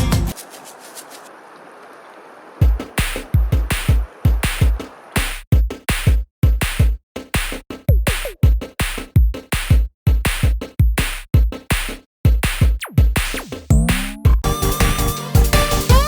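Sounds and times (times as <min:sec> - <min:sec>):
drum machine beat: 0:00.0 - 0:00.4, 0:02.6 - 0:16.0.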